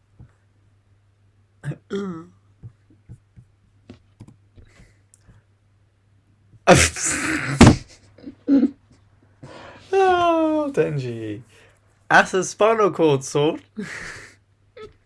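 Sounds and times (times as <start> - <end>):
loud breathy vocal burst: 6.7 - 7.8
man murmuring: 6.7 - 7.8.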